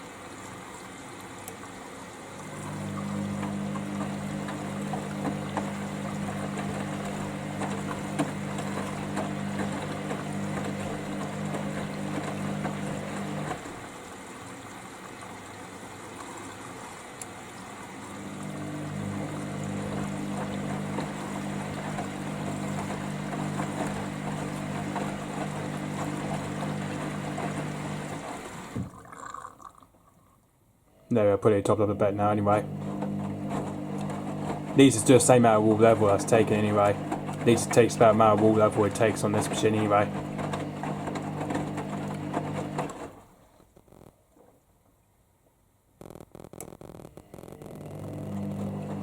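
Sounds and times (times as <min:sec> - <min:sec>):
rushing splashing water: 0:00.0 - 0:29.3
washing machine hum: 0:00.0 - 0:29.8, 0:31.1 - 0:43.6, 0:47.0 - 0:49.0.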